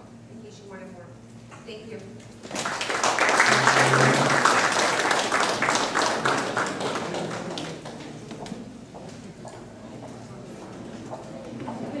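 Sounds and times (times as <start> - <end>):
audience applauding: 2.4 - 8.6.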